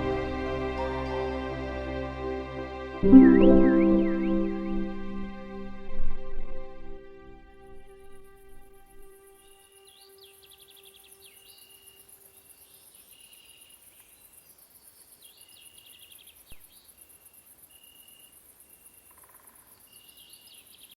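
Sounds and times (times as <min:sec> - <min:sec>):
low ambient music tone: 0:00.0 - 0:11.0.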